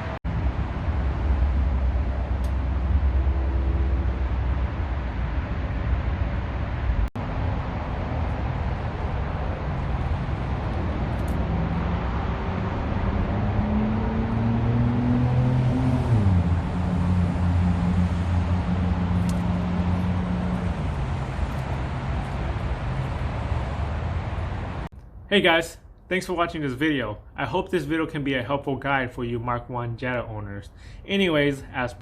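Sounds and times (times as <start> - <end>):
road noise: 0.0 - 32.0
car engine revving: 0.9 - 24.9.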